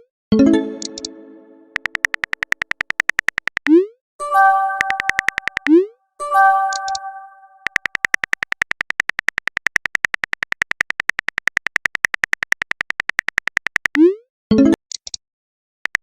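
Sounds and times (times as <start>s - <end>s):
brief electronic chime: 4.2s - 7.8s.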